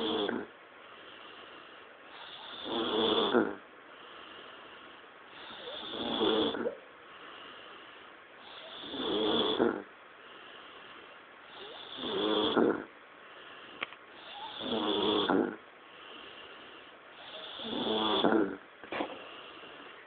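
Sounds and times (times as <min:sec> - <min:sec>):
man snoring: 0:00.0 - 0:00.5, 0:02.2 - 0:03.6, 0:05.4 - 0:06.8, 0:08.5 - 0:09.9, 0:11.5 - 0:12.9, 0:14.2 - 0:15.6, 0:17.2 - 0:18.6.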